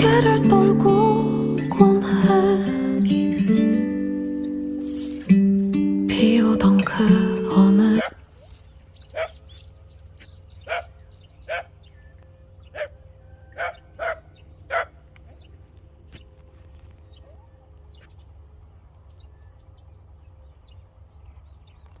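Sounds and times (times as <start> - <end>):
small birds chirping: 8.3 - 22.0
dog barking: 9.1 - 9.4, 10.6 - 11.7, 12.7 - 15.0.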